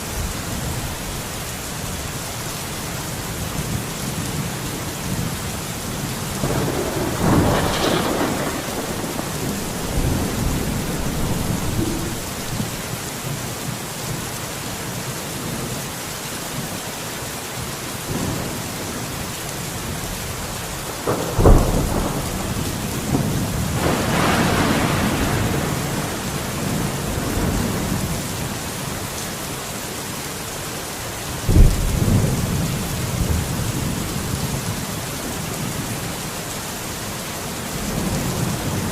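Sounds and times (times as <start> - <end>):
steady rain: 0.0 - 38.9
thunder rumbling: 4.4 - 13.0, 20.8 - 28.2
sharp thunderclaps: 6.4 - 12.9, 20.9 - 28.0.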